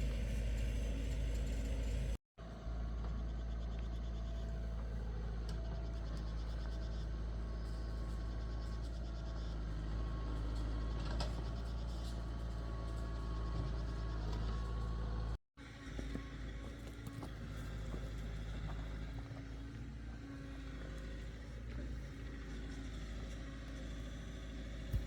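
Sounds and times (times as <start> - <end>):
engine humming steadily: 0.0 - 25.0.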